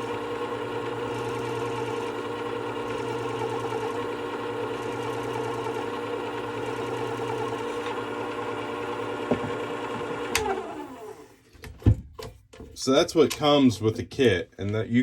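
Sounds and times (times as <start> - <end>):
sharpener motor humming: 0.0 - 11.2.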